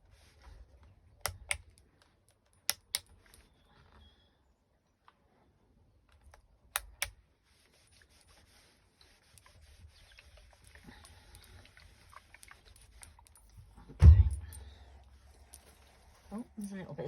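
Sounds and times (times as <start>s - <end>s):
iron clicks: 1.2s - 1.8s, 2.6s - 3.1s, 6.3s - 7.1s.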